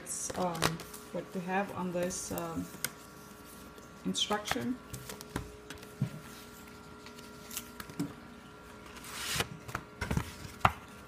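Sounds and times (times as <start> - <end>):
faint steady hum: 0.0 - 11.0
paper rustling: 2.0 - 8.0.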